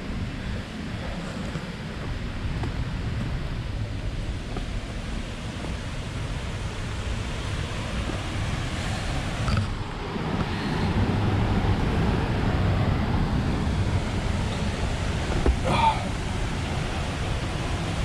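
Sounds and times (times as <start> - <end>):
fast creek water: 0.0 - 18.0
waterfall roaring: 0.0 - 18.0.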